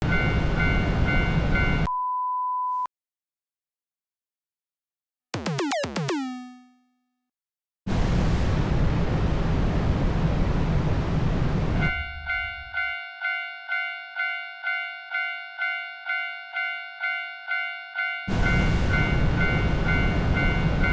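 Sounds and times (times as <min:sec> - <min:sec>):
steady beep: 0:05.4 - 0:06.8
rushing rumble: 0:07.9 - 0:12.8.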